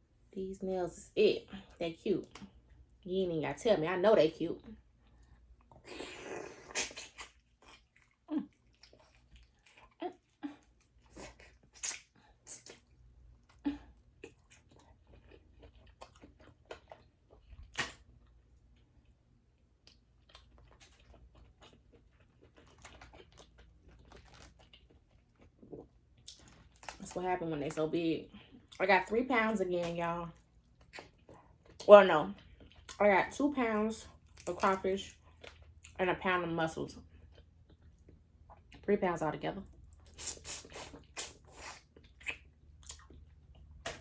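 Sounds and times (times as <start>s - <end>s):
chewing shellfish with crunches: 6.6s - 27.1s, 30.3s - 33.0s, 34.1s - 36.0s, 37.0s - 38.8s, 40.9s - 44.0s.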